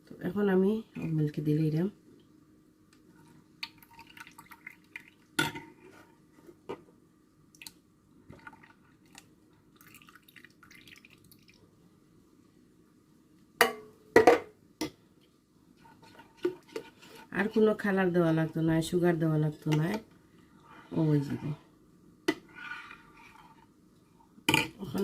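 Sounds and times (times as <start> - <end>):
milk pouring and dripping: 3.6 - 5.4, 7.5 - 11.7.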